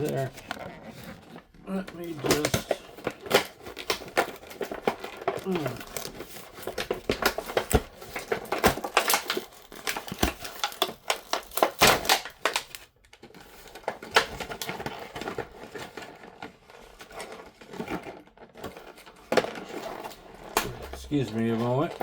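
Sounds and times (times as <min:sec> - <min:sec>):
packaging being torn and crinkled: 0:00.0 - 0:16.0.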